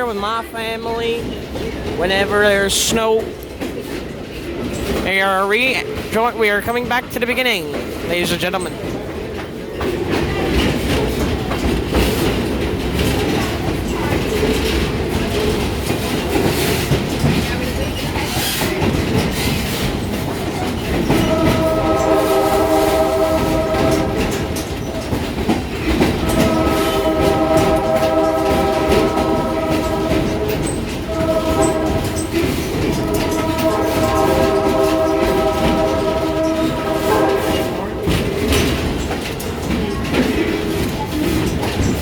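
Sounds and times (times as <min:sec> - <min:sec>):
train rumble and clatter: 0:00.0 - 0:42.0
locomotive horn blast: 0:20.9 - 0:24.7, 0:26.0 - 0:38.5.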